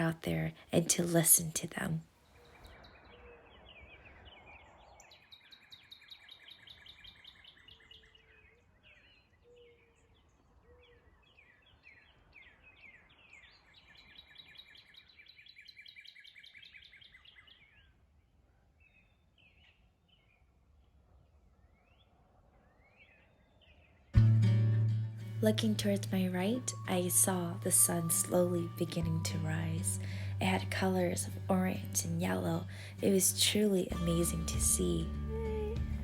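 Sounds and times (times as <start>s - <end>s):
bird chirps: 2.2s - 18.0s, 25.7s - 35.2s
songbird trills: 2.2s - 18.0s, 25.5s - 35.2s.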